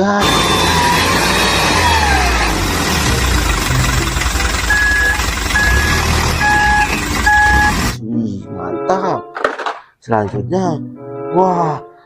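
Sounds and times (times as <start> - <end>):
toy engine-like rumble: 0.0 - 8.0
toy music: 3.7 - 7.8
electronic beep: 4.6 - 8.0.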